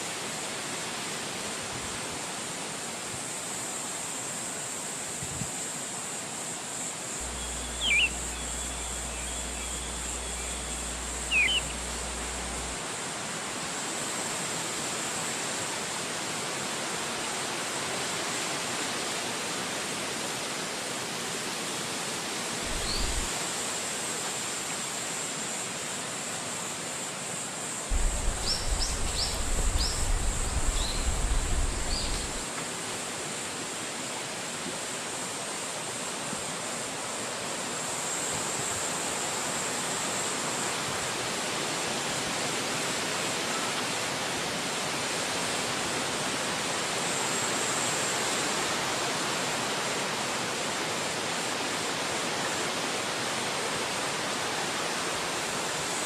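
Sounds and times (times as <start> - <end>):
wind rushing through trees: 0.0 - 24.1, 27.9 - 34.3
bird chirps: 7.2 - 12.8, 22.7 - 23.3, 27.9 - 32.4
low rumble: 7.2 - 12.8, 27.9 - 32.4.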